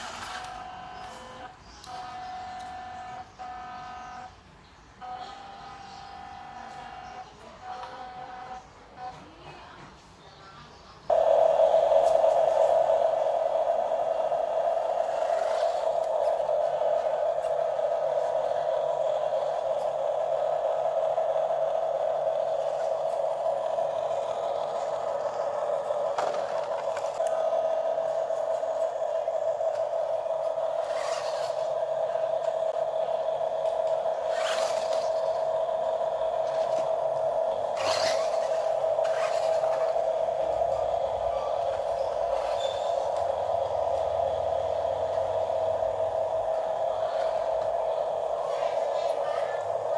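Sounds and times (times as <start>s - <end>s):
small electric motor whining: 11.9s - 49.7s.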